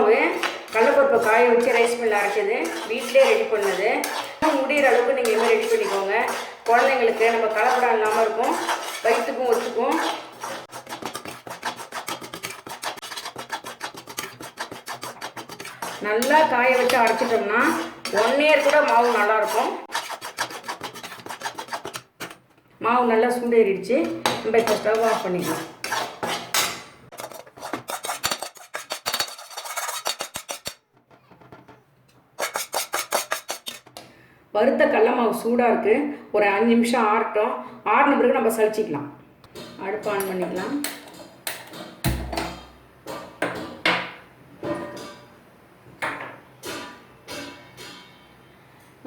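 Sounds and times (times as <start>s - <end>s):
spatula scraping a pan: 0.0s - 22.4s, 23.9s - 34.0s, 46.6s - 48.3s.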